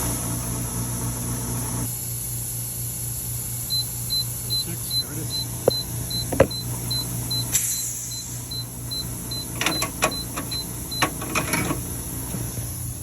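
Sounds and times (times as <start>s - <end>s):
brief hiss: 7.5s - 8.2s
clicks and knocks of tools: 9.6s - 11.8s.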